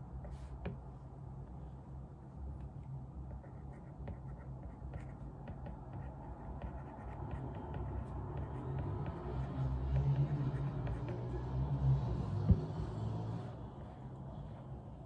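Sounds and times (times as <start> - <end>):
steady low hum: 0.0 - 15.0
pen scratching on paper: 3.3 - 11.5.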